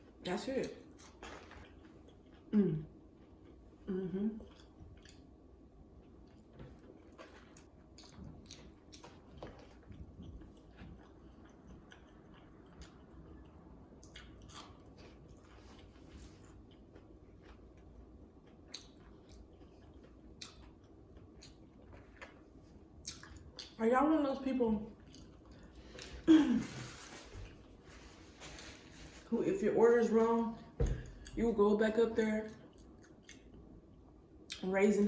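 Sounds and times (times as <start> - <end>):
chewing food: 0.6 - 23.8, 24.9 - 26.2, 32.5 - 34.7.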